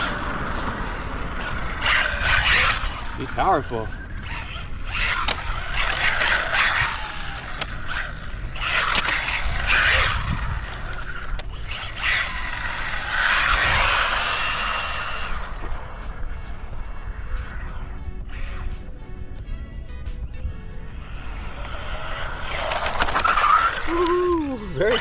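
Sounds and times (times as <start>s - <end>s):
rc truck motor running: 0.0s - 18.6s, 21.0s - 25.0s
tyre scrub on pavement: 22.1s - 24.1s.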